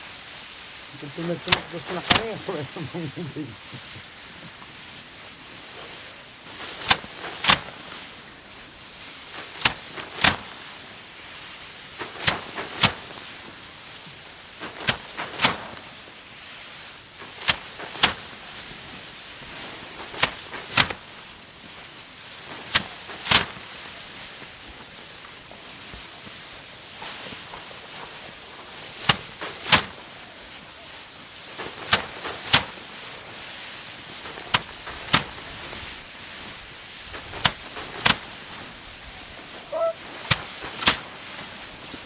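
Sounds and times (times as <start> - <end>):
rice sheaves thwacking: 29.0 - 42.0.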